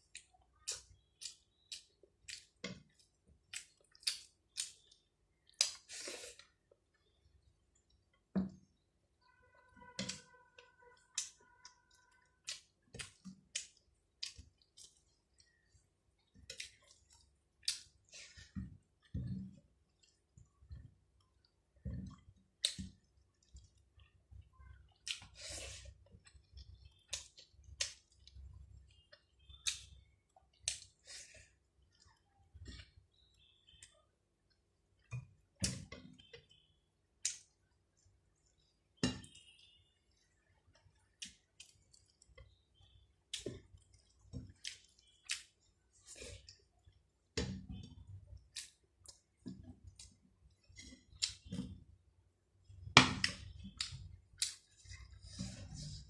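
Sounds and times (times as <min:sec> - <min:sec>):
person chewing: 0:00.0 - 0:07.2, 0:09.8 - 0:19.2, 0:19.8 - 0:35.1, 0:40.7 - 0:47.3.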